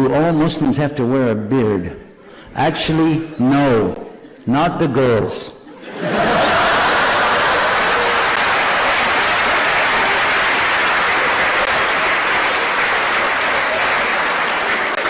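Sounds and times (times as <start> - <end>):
audience applauding: 6.0 - 15.0.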